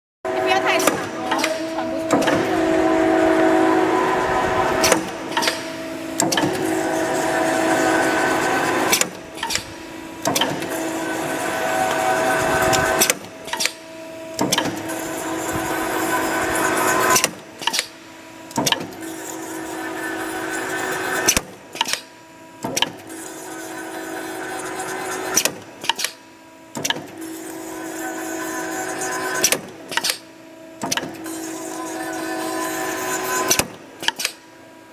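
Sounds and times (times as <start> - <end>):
machine motor whine: 0.3 - 34.9
sharp machine clacks: 0.7 - 2.5, 4.8 - 19.5.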